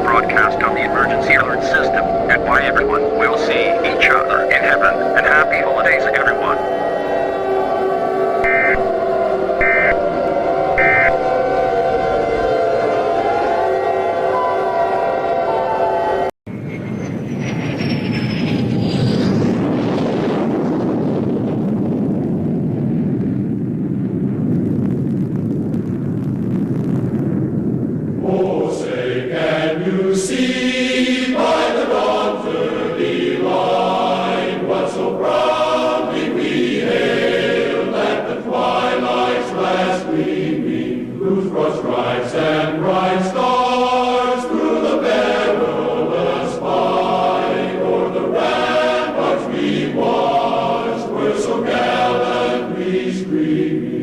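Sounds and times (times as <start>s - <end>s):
choir singing: 0.0s - 16.3s, 28.2s - 54.0s.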